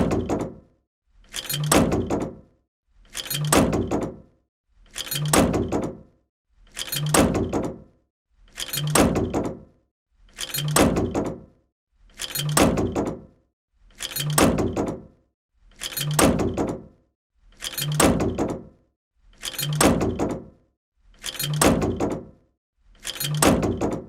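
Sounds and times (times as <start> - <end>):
heavy metal door clanking shut: 0.0 - 0.6, 1.5 - 2.4, 3.2 - 4.2, 5.2 - 6.0, 7.0 - 7.8, 8.8 - 9.6, 10.6 - 11.4, 12.4 - 13.2, 14.2 - 15.0, 16.0 - 16.9, 17.8 - 18.7, 19.6 - 20.5, 21.4 - 22.3, 23.2 - 24.0.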